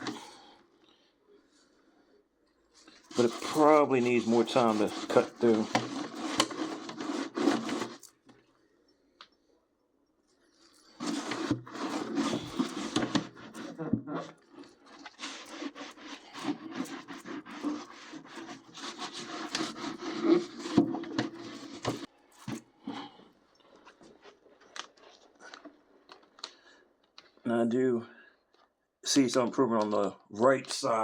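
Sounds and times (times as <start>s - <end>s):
scrubbing inside toaster oven: 0.0s - 0.5s, 3.0s - 8.1s, 10.9s - 23.1s.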